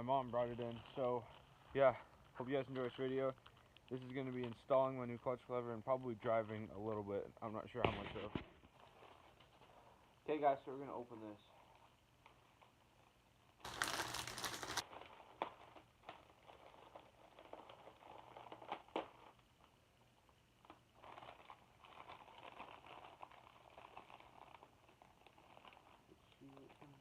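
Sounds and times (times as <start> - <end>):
packaging crinkling and rustling: 0.0 - 27.0
package ripping open: 13.6 - 19.8, 20.6 - 26.8.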